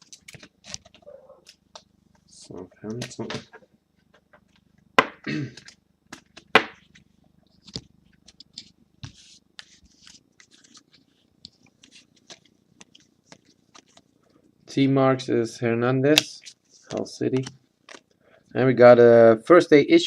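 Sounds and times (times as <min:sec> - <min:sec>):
trading cards clicking and rustling: 0:09.6 - 0:14.1.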